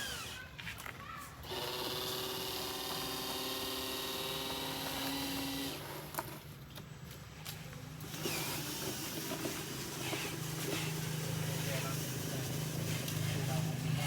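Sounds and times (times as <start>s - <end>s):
small electric motor whining: 0.0s - 0.5s, 1.4s - 6.2s, 8.1s - 13.7s.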